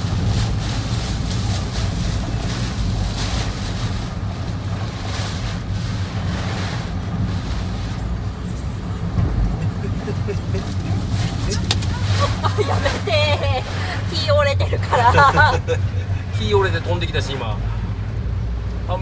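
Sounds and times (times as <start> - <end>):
wind rumbling on microphone: 0.0 - 14.2.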